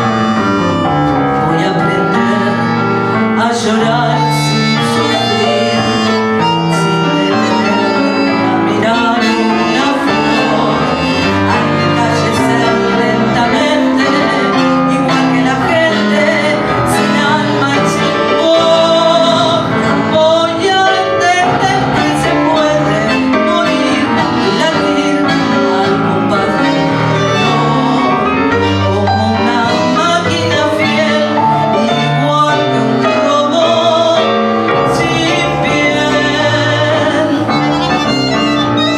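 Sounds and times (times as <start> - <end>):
tango music: 0.0 - 38.9.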